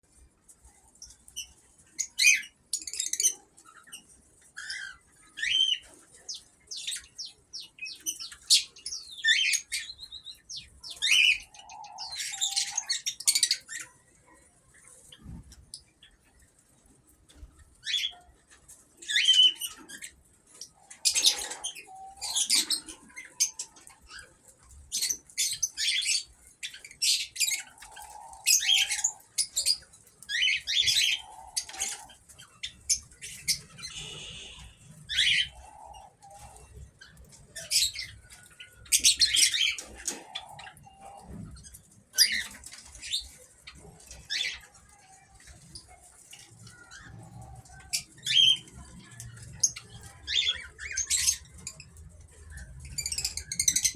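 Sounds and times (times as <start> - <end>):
cockatiels squawking and chirping: 0.4 - 16.5, 17.3 - 53.9.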